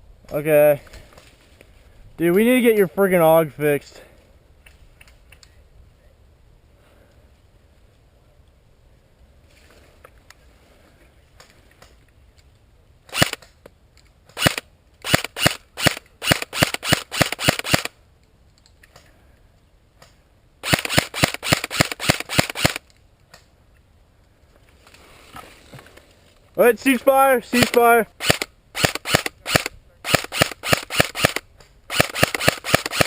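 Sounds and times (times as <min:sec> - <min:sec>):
airsoft guns firing: 0:14.4 - 0:17.9, 0:20.6 - 0:22.8, 0:27.5 - 0:33.0.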